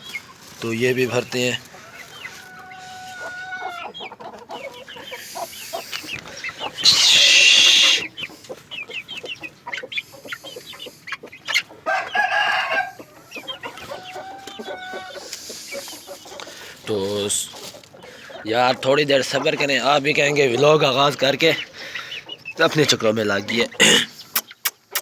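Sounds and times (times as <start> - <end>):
chickens clucking and cheeping: 0.0 - 25.0
rooster crowing: 1.8 - 3.8, 11.8 - 13.1, 13.7 - 15.3.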